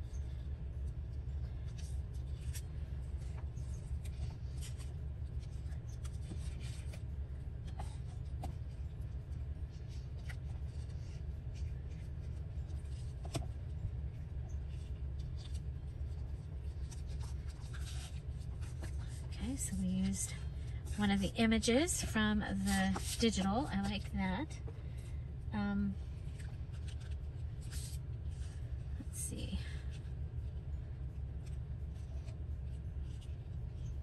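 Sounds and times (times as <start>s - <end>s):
steady low hum: 0.0s - 34.0s
paper rustling and tapping: 12.8s - 13.6s.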